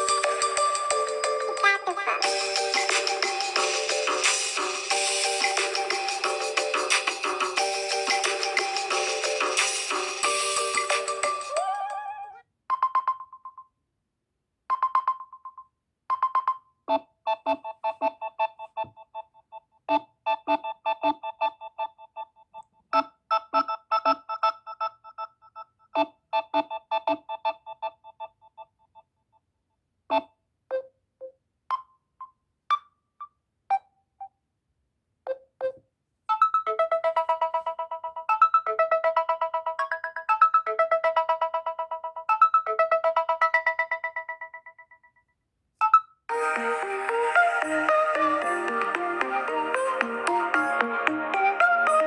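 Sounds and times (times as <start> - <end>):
bell-like electronic phrases: 0.0 - 4.0, 46.3 - 51.4
plucked notes melody: 46.3 - 52.0.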